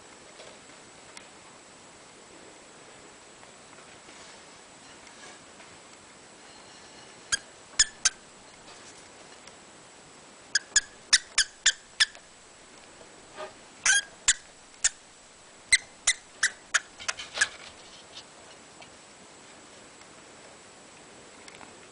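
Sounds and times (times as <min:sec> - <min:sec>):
small pet squeaking: 0:07.3 - 0:08.2, 0:10.5 - 0:12.2, 0:13.8 - 0:15.0, 0:15.7 - 0:17.6.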